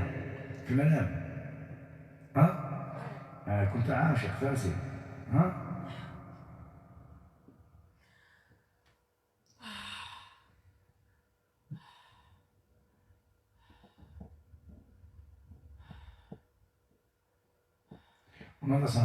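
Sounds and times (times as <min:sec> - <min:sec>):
person sighing and breathing heavily: 0:09.6 - 0:10.5.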